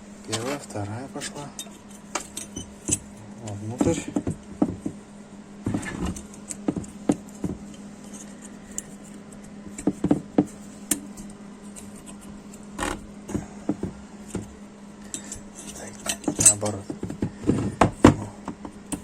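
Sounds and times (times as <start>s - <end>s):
steady low hum: 0.0s - 19.0s
metal clips clicking and clinking: 15.1s - 16.8s.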